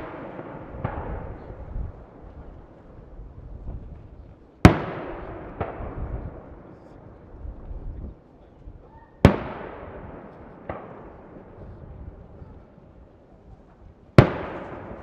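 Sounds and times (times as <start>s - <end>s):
firework shells bursting: 14.2s - 15.0s.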